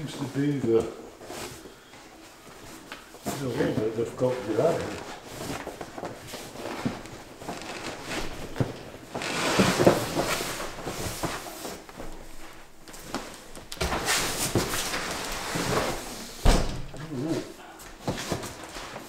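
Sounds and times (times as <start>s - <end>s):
cardboard and foam scraping: 2.7s - 12.7s, 13.8s - 16.4s.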